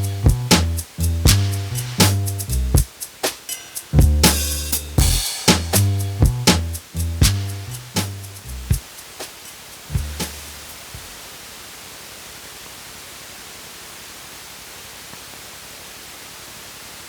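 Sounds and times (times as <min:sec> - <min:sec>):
drum machine hits: 0:00.0 - 0:11.1
steady electronic hiss: 0:00.0 - 0:17.0.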